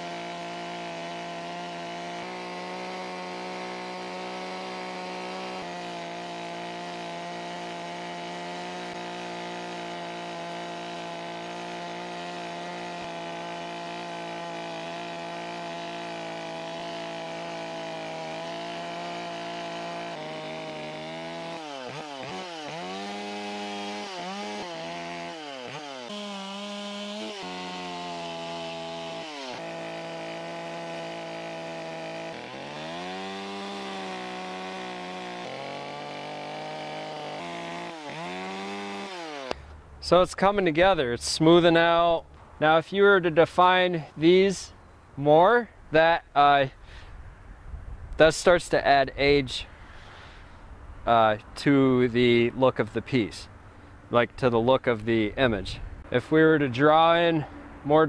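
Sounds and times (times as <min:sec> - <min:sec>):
chainsaw cutting wood: 0:00.0 - 0:42.3.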